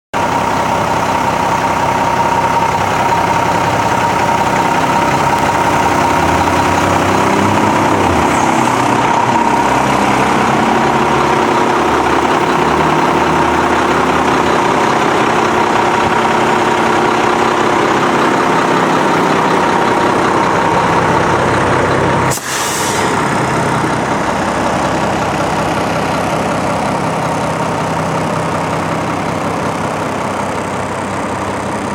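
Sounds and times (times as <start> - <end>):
truck engine droning: 0.2 - 31.9
high whine: 1.9 - 16.4.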